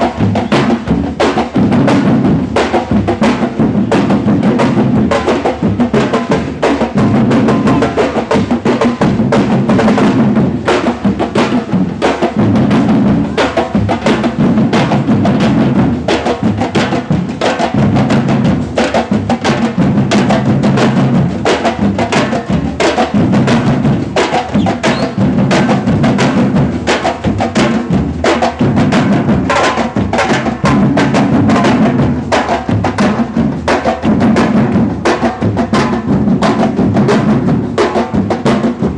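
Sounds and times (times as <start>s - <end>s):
samba drum ensemble: 0.0s - 38.9s.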